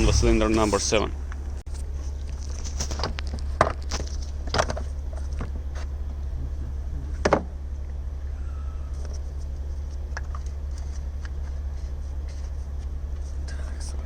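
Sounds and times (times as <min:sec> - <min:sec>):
steady low hum: 0:00.0 - 0:08.3.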